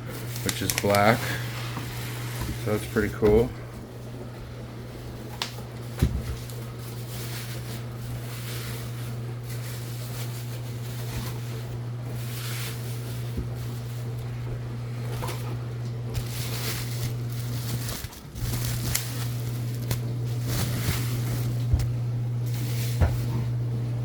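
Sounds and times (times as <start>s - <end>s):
steady low hum: 0.0s - 24.0s
packaging rustling and clicking: 0.1s - 3.4s, 5.4s - 11.6s, 15.1s - 23.3s.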